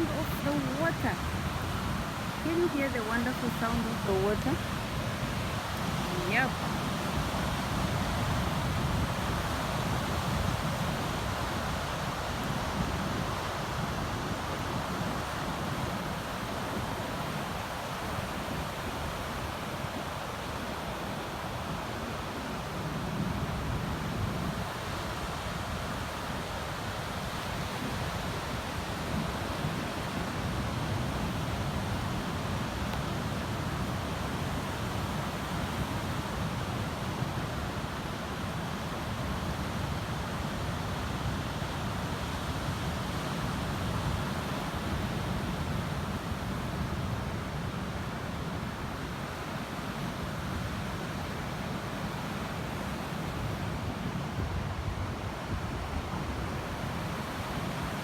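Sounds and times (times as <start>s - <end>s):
wind on microphone: 0.0s - 38.4s
surf washing onto beach: 0.0s - 58.0s.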